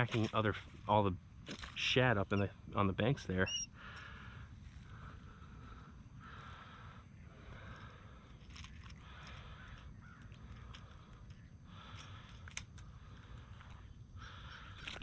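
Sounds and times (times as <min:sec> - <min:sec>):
low outdoor rumble: 0:00.0 - 0:15.0
crow cawing: 0:03.4 - 0:08.2, 0:08.9 - 0:11.1, 0:14.2 - 0:15.0.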